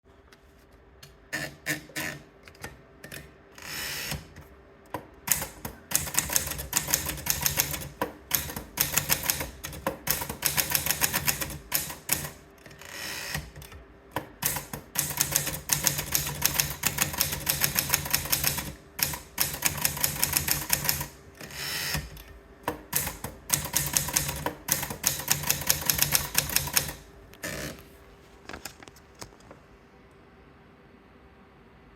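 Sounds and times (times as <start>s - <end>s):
manual typewriter typing: 5.2s - 12.4s, 13.2s - 27.0s.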